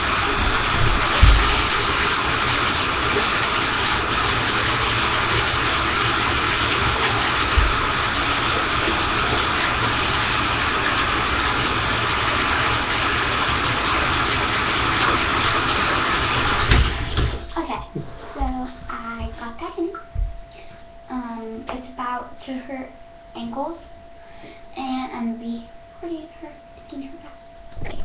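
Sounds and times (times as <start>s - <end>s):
faucet water pouring into tub: 0.0s - 17.4s.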